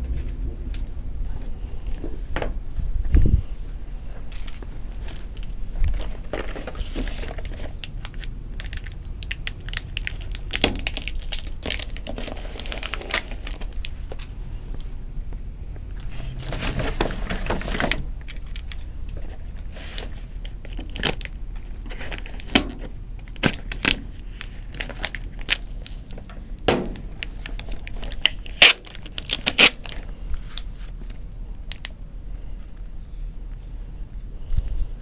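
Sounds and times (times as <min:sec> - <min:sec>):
crinkling and rustling: 0:04.1 - 0:15.0, 0:15.8 - 0:32.0.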